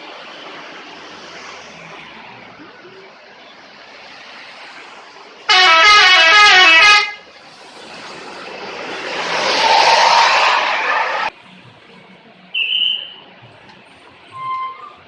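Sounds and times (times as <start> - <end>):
vehicle noise rushing: 0.0 - 15.0
musical air horn: 5.5 - 7.2.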